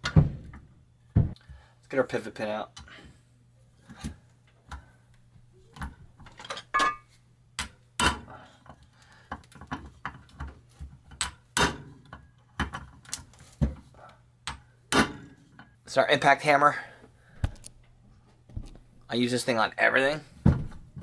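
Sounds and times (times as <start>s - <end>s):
metal tools clinking and knocking: 6.3s - 7.2s.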